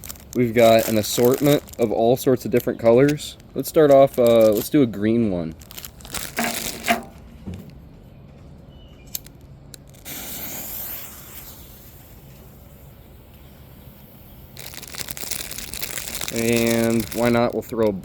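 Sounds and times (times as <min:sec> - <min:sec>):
smoke ball hissing: 0:10.0 - 0:17.4.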